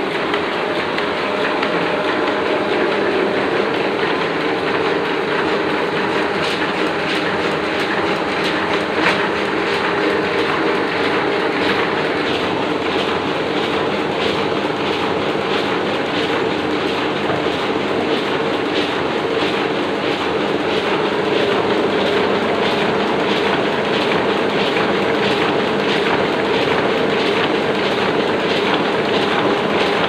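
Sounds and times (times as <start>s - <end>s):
printing press clacking: 0.0s - 30.0s
printing press hum: 0.0s - 30.0s.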